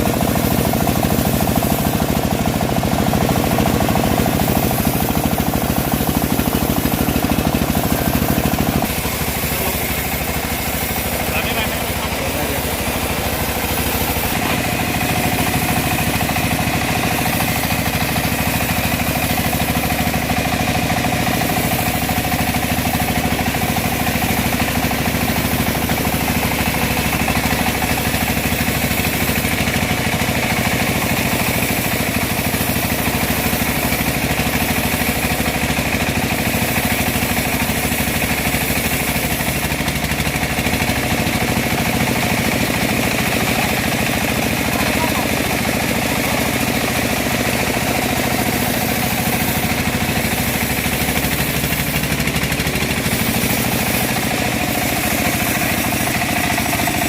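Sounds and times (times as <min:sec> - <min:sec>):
bandsaw mill sawing log: 0:00.0 - 0:57.0.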